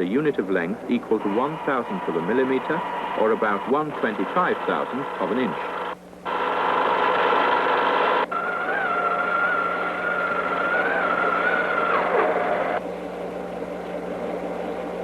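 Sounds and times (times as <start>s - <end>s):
steady high machine whine: 0.0s - 15.0s
machine tools mechanical din: 1.2s - 12.8s.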